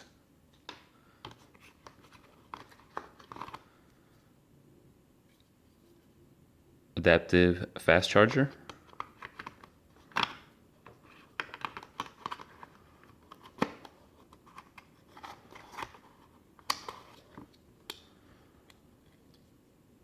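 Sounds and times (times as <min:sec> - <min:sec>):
clicks and taps of unpacking: 0:08.6 - 0:18.1
plastic and cardboard rustling: 0:08.8 - 0:17.6.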